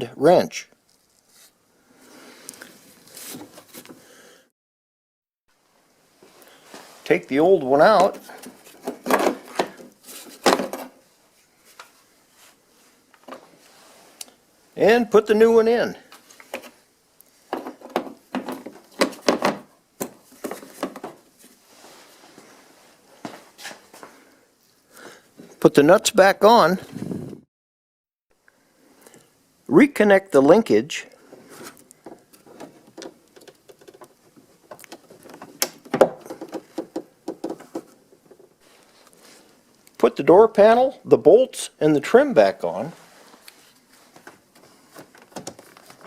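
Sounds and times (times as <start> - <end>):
knocks clicks and rubs of door handle: 34.9 - 37.9.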